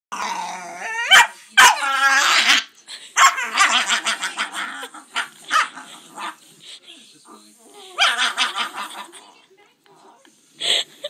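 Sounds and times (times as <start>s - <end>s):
puppy whining: 0.1s - 5.8s
puppy howling: 0.2s - 4.6s
puppy barking: 1.0s - 1.8s.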